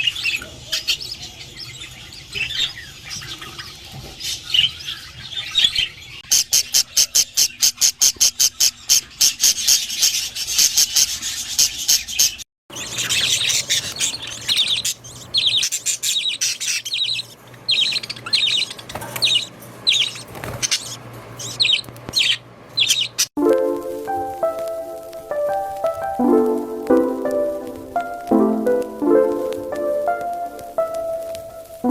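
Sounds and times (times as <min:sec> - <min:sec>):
budgerigars chirping and chattering: 0:00.0 - 0:23.3
rapid sharp bird calls: 0:00.0 - 0:23.3.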